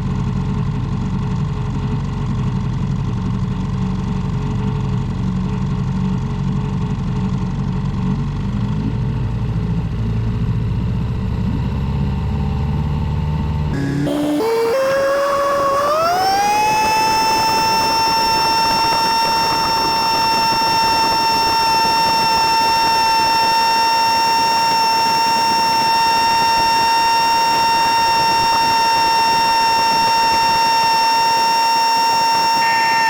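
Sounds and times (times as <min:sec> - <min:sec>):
small boat motor whine: 0:08.6 - 0:33.0.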